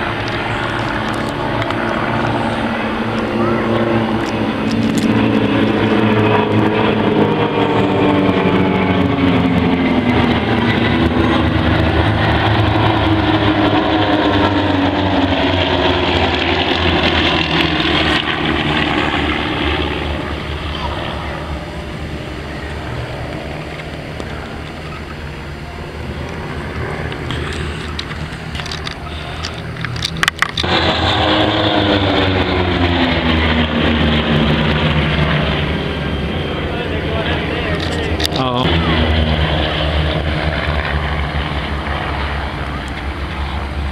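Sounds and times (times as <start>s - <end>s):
aircraft engine drone: 0.0s - 43.9s
aircraft engine passing by: 0.0s - 43.9s
propeller plane flying past: 0.0s - 43.9s
sharp clicks: 27.0s - 30.7s.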